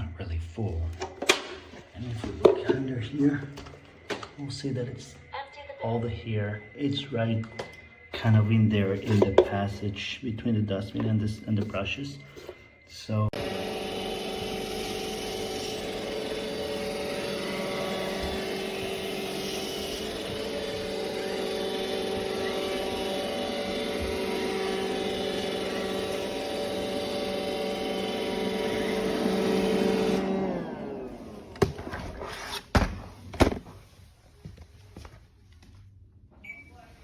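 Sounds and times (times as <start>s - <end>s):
vacuum motor whining: 10.8s - 33.6s.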